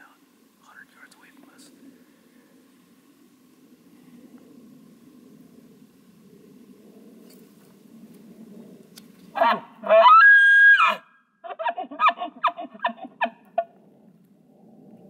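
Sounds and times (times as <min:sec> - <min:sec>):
elk chuckles: 0:11.4 - 0:13.8.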